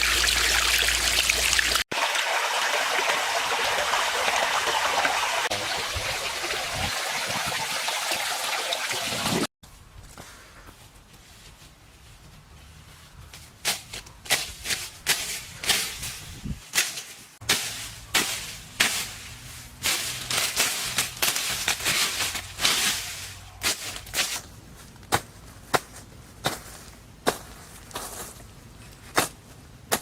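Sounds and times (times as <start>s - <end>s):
sharp knocks and scrapes: 13.6s - 24.5s.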